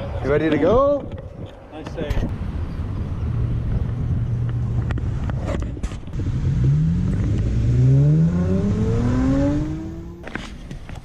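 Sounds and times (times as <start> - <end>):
car engine accelerating: 4.3 - 10.4.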